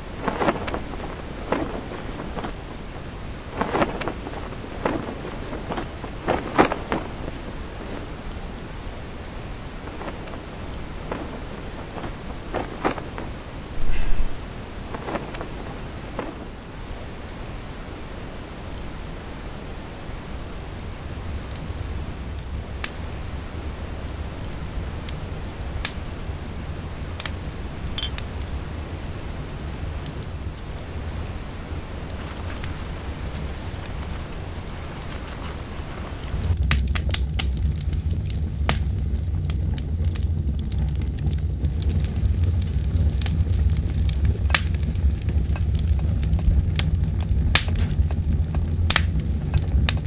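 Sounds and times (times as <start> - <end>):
high-pitched insect chorus: 0.0 - 36.6.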